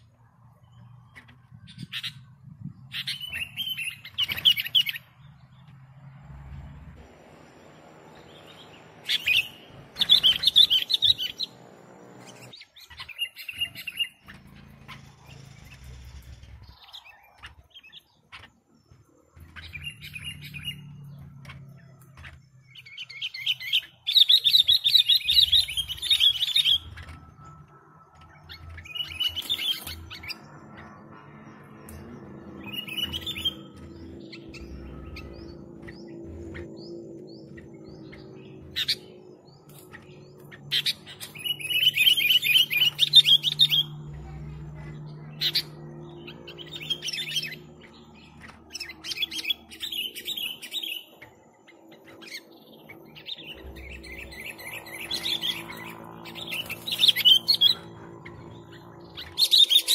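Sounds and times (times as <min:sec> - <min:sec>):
bird warbling song: 0:00.0 - 0:59.9
low background rumble: 0:25.3 - 0:49.0, 0:53.0 - 0:59.5.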